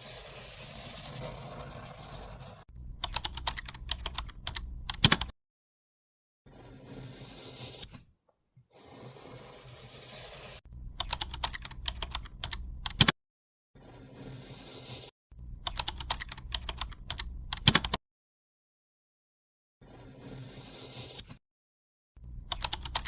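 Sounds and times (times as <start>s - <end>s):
keyboard key clicks: 11.0s - 13.1s.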